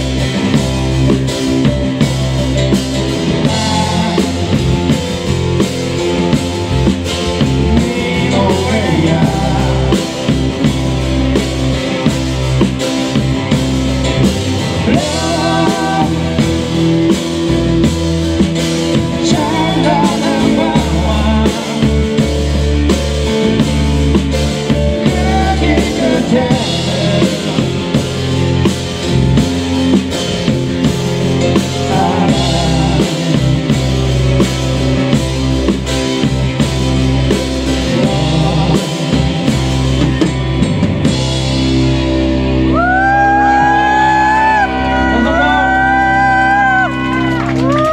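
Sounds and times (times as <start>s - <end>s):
live rock band playing: 0.0s - 47.9s
person singing: 3.4s - 5.3s, 7.4s - 11.1s, 14.6s - 17.5s, 18.9s - 22.6s, 24.6s - 28.4s, 31.4s - 34.2s, 37.3s - 40.2s.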